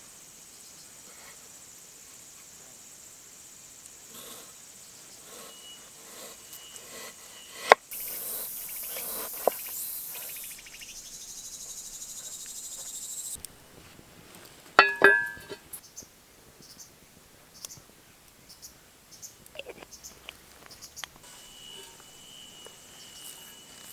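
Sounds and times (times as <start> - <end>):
loud high buzzing insect song: 0.0 - 13.4, 20.0 - 23.9
insects chirping: 0.0 - 14.0, 14.8 - 17.0, 18.4 - 23.9
short ringing clink: 14.8 - 15.6.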